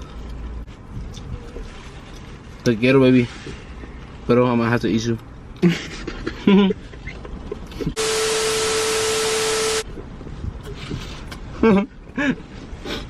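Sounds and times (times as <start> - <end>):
low electronic beep: 8.0 - 9.8
loud static hiss: 8.0 - 9.9.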